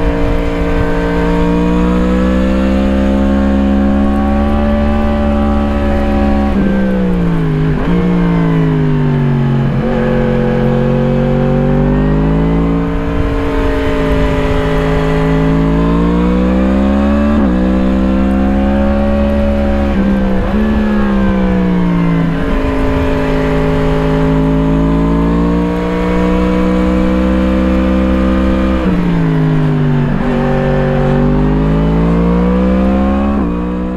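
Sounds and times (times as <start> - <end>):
motorcycle engine revving: 0.0 - 33.9.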